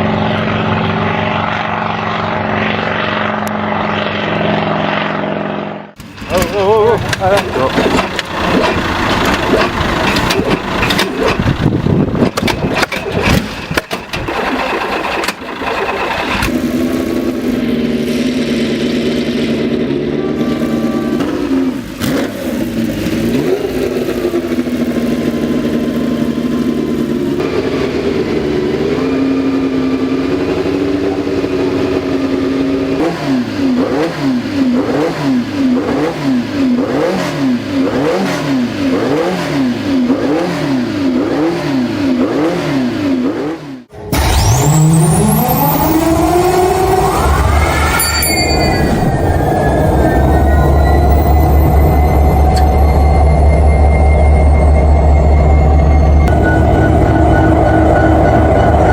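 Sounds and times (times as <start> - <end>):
old engine cold-starting: 6.0 - 18.2, 43.9 - 48.0.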